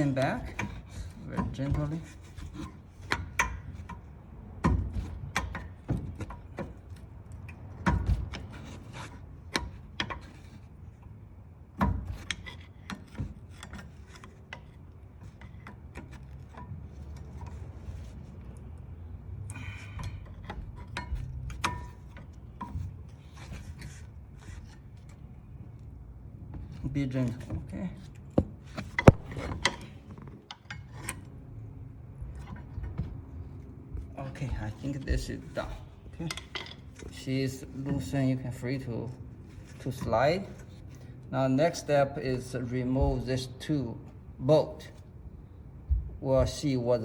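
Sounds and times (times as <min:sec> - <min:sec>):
screwdriver scraping metal caliper: 0:00.0 - 0:04.2, 0:12.1 - 0:18.8, 0:26.7 - 0:31.5.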